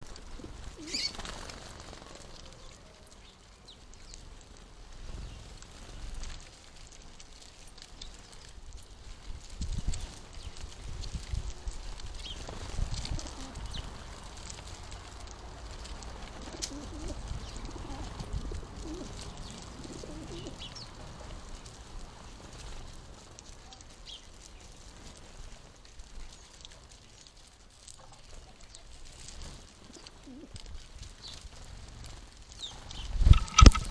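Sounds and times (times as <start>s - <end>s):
pigeon cooing: 0.2s - 3.2s, 13.0s - 14.1s, 15.2s - 20.8s, 29.8s - 30.6s
sparrows chirping: 0.3s - 1.4s, 2.1s - 4.2s, 12.1s - 21.0s, 23.9s - 24.7s, 32.5s - 33.9s.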